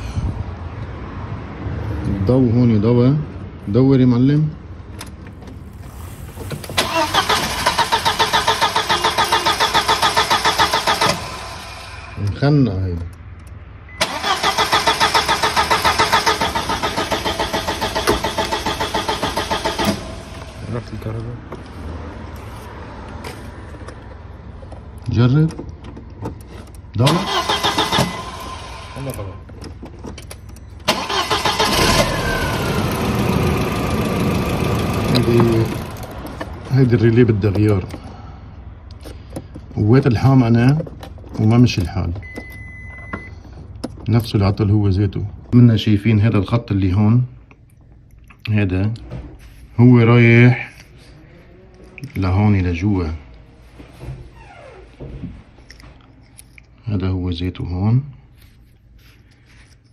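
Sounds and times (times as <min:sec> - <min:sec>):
car engine running: 0:05.2 - 0:12.0, 0:32.0 - 0:36.5
car starter cranking: 0:05.6 - 0:12.2, 0:14.0 - 0:20.6, 0:27.0 - 0:29.2, 0:30.8 - 0:36.2.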